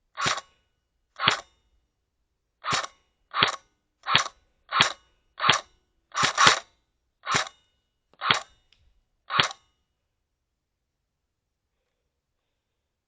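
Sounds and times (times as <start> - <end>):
airsoft gun shots: 0.2 - 0.5, 1.2 - 1.4, 2.6 - 7.6, 8.2 - 8.5, 9.3 - 9.6.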